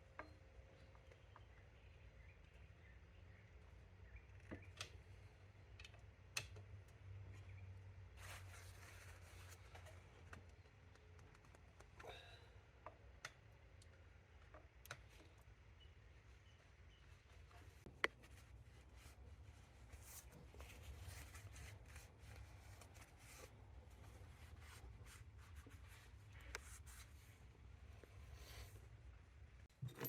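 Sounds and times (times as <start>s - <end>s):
metal parts and tools clicking: 29.8s - 30.0s.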